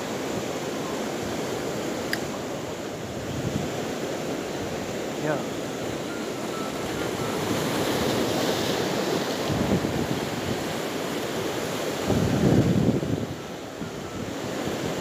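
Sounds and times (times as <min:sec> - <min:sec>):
surf washing onto beach: 0:00.0 - 0:15.0
wind buffeting microphone: 0:02.9 - 0:04.9, 0:06.8 - 0:10.9, 0:11.9 - 0:15.0.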